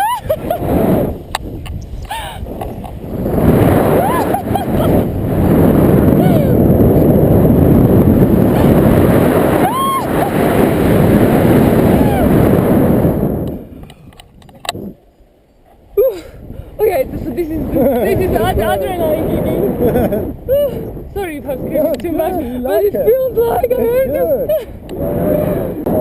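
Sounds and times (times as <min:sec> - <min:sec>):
wind rushing over microphone: 0:00.0 - 0:26.0
person whooping: 0:04.0 - 0:04.9, 0:06.2 - 0:06.6, 0:09.6 - 0:10.3, 0:11.9 - 0:12.4, 0:20.5 - 0:20.8.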